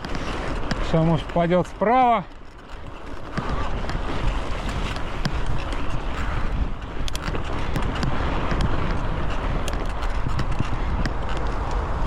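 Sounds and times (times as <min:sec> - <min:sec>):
bike rattles and clicks: 0:00.0 - 0:12.0
low tyre rumble: 0:00.0 - 0:12.0
wind rushing over microphone: 0:00.0 - 0:12.0.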